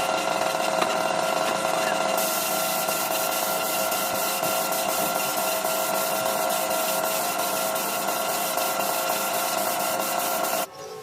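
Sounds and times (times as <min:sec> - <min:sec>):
power tool whining: 0:00.0 - 0:10.7
rasping on a surface: 0:02.2 - 0:10.7.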